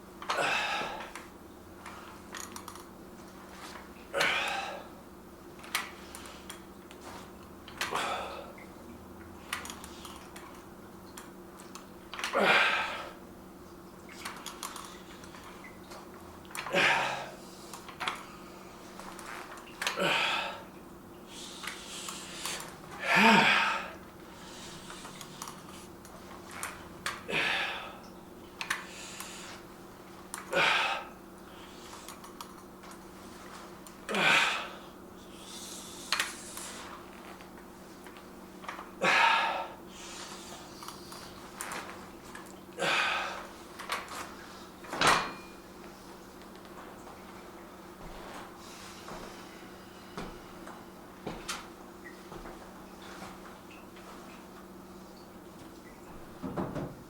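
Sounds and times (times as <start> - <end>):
faint steady hum: 0.0 - 57.0
man exhaling forcefully: 21.4 - 24.0, 27.3 - 28.0, 30.5 - 31.1, 34.1 - 34.8, 39.0 - 39.8.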